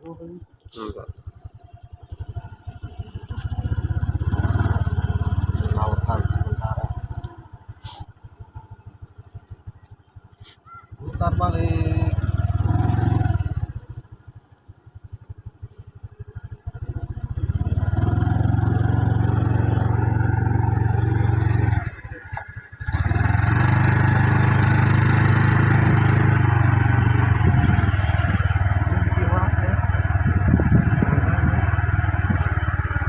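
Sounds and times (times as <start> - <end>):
motorcycle engine ticking over: 0.0 - 33.0
wind rumble on microphone: 27.2 - 32.7.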